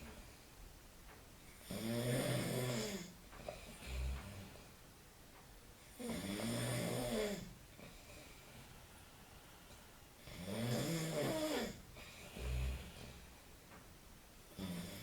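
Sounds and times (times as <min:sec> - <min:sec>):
quiet breathing: 0:01.4 - 0:05.0, 0:05.8 - 0:13.9
man snoring: 0:01.6 - 0:03.1, 0:06.0 - 0:07.5, 0:10.3 - 0:13.2, 0:14.6 - 0:15.0.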